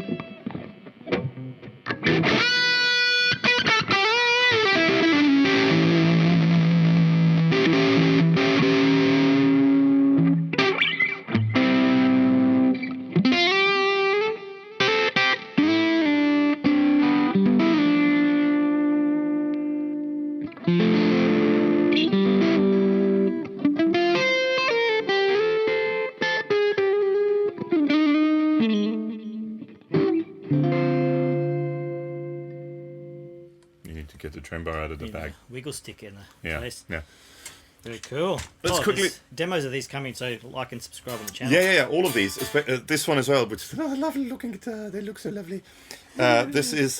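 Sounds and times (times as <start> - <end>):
distorted electric guitar chords: 0.0 - 33.6, 41.2 - 42.8
guitar single-note runs with slides: 41.5 - 42.8.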